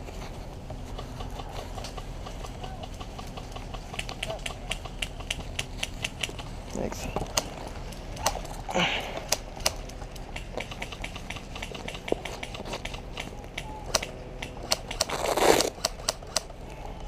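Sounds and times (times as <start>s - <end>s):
airsoft guns firing: 7.2s - 16.5s.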